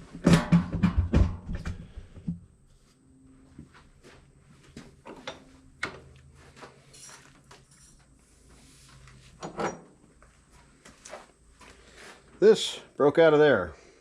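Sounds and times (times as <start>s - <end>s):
metal parts clicking and clunking: 5.0s - 6.1s, 9.4s - 10.0s.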